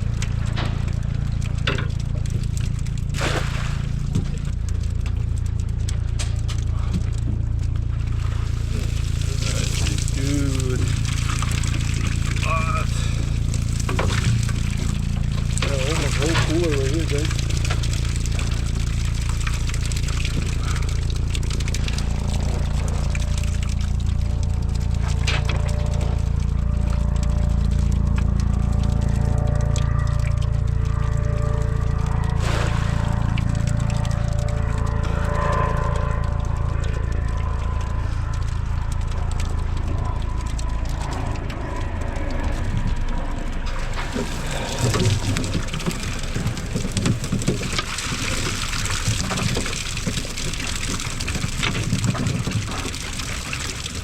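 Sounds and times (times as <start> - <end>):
low engine hum: 0.0 - 54.0
motor droning: 0.0 - 54.0
water splashing and trickling: 0.0 - 54.0
small clicks: 33.2 - 44.0.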